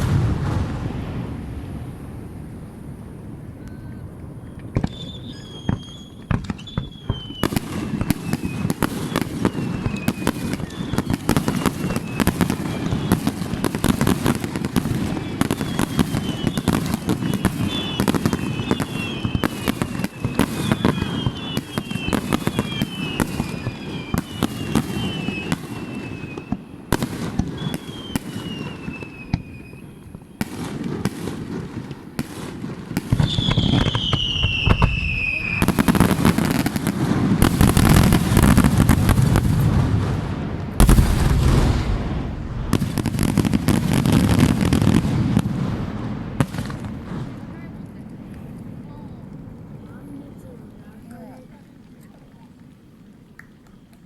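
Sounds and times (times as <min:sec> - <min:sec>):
fireworks bangs and crackles: 0:00.0 - 0:51.1
fireworks whistles falling in pitch: 0:03.6 - 0:31.0, 0:33.0 - 0:39.4.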